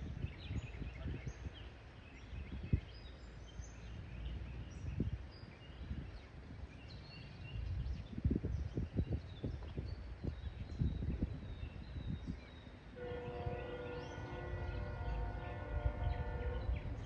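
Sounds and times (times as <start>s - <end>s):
songbirds chirping: 0.0s - 17.0s
low outdoor rumble: 11.3s - 17.0s.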